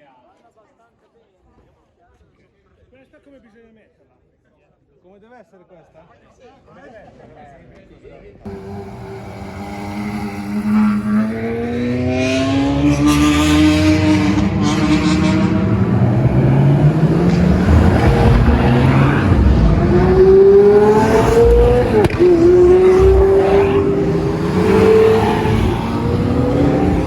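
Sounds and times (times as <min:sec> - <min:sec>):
race car engines accelerating: 0:08.5 - 0:27.0.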